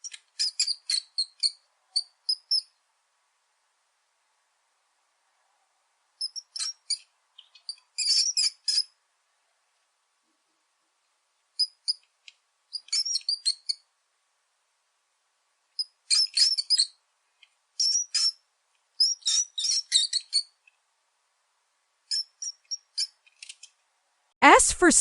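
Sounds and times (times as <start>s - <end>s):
rat squeaking: 0.0s - 2.8s, 6.2s - 9.0s, 11.6s - 12.1s, 12.7s - 13.8s, 15.8s - 17.0s, 17.8s - 18.4s, 19.0s - 20.6s, 22.1s - 23.6s.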